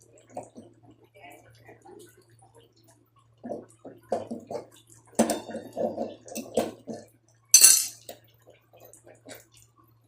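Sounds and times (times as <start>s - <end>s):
faint electrical hum: 0.0s - 10.0s
metal tools knocking and clattering: 7.6s - 8.0s
scraping metal clank: 7.6s - 8.0s.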